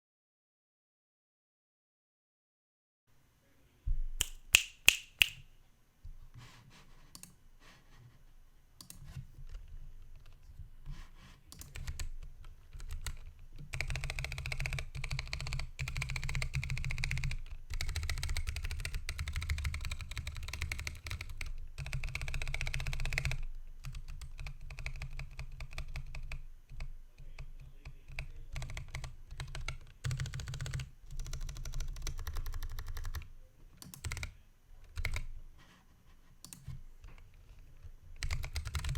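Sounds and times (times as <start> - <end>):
mechanical keyboard typing: 11.6 - 35.3, 38.2 - 38.9.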